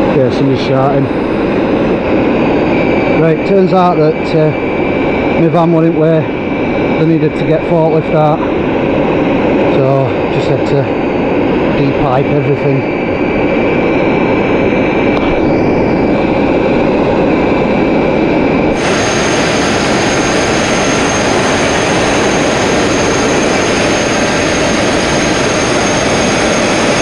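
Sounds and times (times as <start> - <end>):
abrasive blasting rush of air: 12.9 - 27.0
blast nozzle harsh hiss: 18.8 - 22.0.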